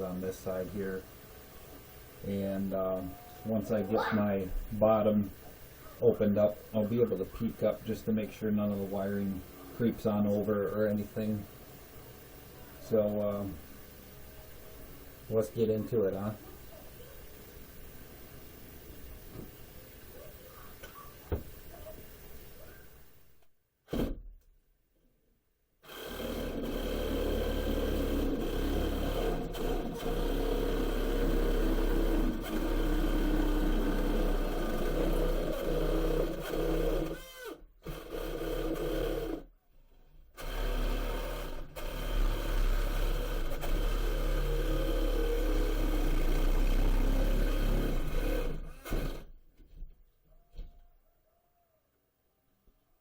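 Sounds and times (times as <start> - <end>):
power tool cutting drywall: 25.8 - 39.5, 40.4 - 49.3.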